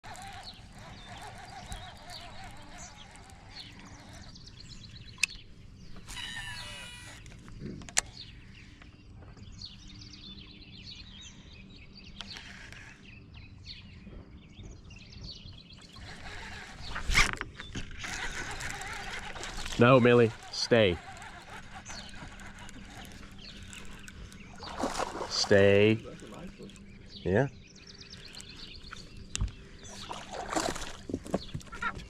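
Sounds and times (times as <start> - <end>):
birds chirping: 0.0 - 32.0
outdoor background noise: 0.0 - 32.0
sharp clicks: 12.2 - 13.0, 16.0 - 25.0.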